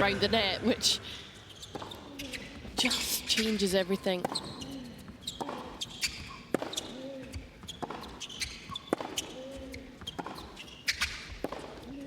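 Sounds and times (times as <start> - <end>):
tennis ball struck by rackets: 4.2 - 12.0.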